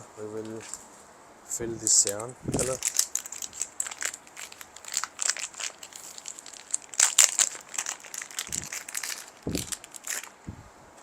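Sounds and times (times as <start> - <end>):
plastic bottle crackling clicks: 2.0 - 10.4
soft low thumps: 2.4 - 2.8, 8.4 - 9.8, 10.4 - 10.8.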